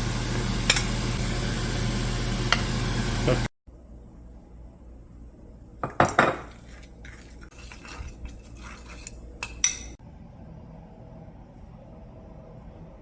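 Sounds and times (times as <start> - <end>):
scraping: 6.3 - 9.2.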